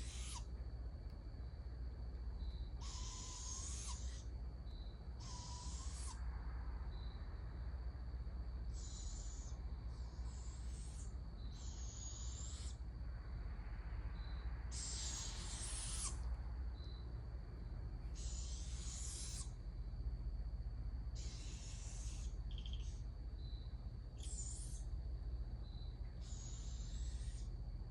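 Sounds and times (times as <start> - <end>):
young owls screeching: 0.0 - 0.5, 2.8 - 4.3, 5.2 - 6.2, 8.7 - 12.8, 14.7 - 16.3, 18.1 - 19.6, 21.1 - 23.1, 24.2 - 24.9, 26.2 - 27.5.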